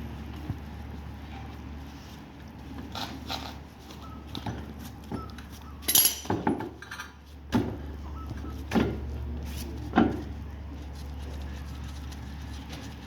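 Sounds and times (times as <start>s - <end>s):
metal hand tools clattering: 5.9s - 7.2s
knocks and clunks on wheel nuts: 6.1s - 7.8s.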